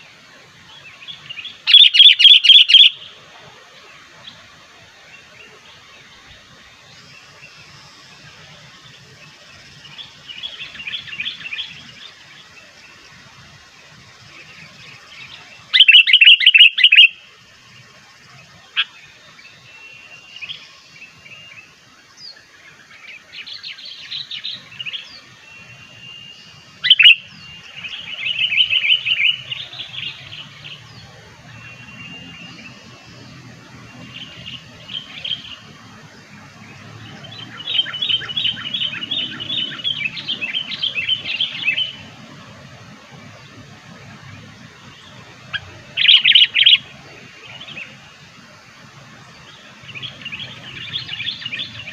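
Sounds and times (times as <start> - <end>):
bird chattering notes: 1.7 - 3.0, 45.5 - 46.8
bird whistled phrases: 1.7 - 3.1, 15.8 - 17.2, 26.0 - 27.3, 46.0 - 46.8.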